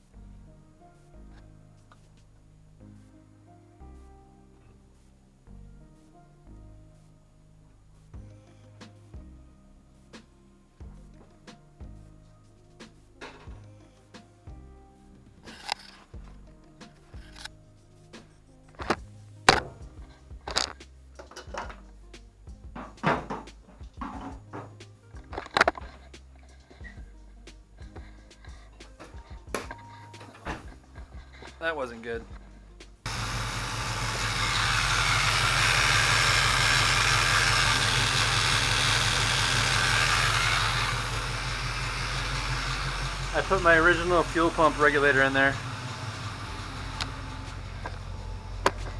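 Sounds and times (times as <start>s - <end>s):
low bass music: 0.0s - 48.9s
car engine idling: 33.1s - 48.9s
rushing noise: 33.1s - 48.9s.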